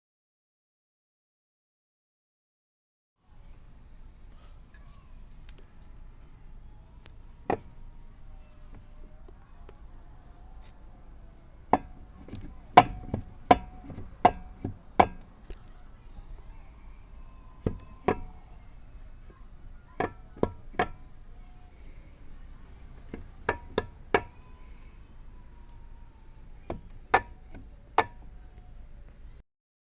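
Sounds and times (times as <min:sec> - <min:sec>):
sharp knocks: 0:11.7 - 0:15.4.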